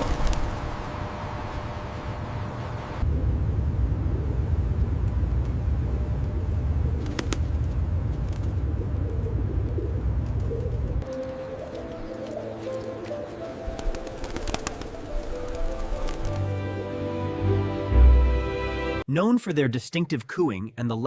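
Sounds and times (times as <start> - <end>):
steady low rumble: 0.0 - 11.1.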